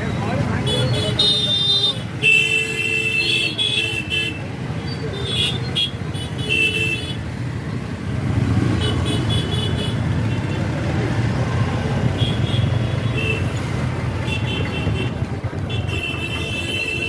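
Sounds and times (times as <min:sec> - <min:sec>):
traffic rumble: 0:00.0 - 0:17.0
vehicle horns honking: 0:00.6 - 0:07.2, 0:08.7 - 0:10.6, 0:12.1 - 0:17.0.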